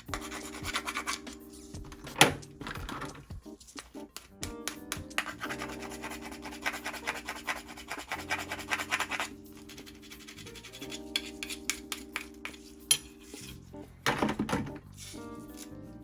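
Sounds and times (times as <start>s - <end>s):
soft background music: 0.0s - 16.0s
shells being scrubbed: 4.8s - 13.7s.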